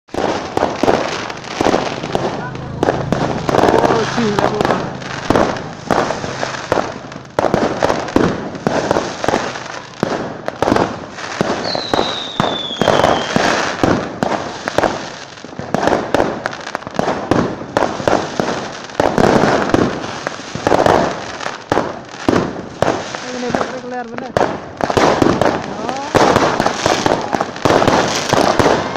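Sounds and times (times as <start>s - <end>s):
fireworks bangs and crackles: 0.0s - 28.9s
falling firework whistle: 11.4s - 13.7s.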